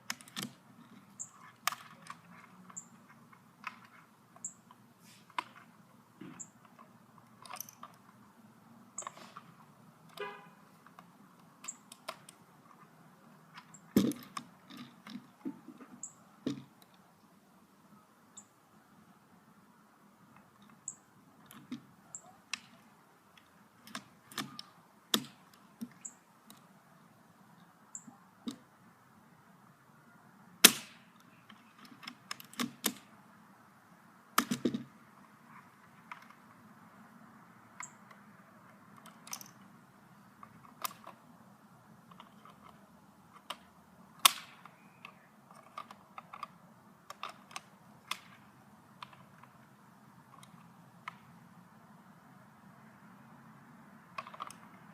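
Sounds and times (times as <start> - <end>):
airsoft rifle clicks and snaps: 43.4 - 46.5, 47.1 - 48.4.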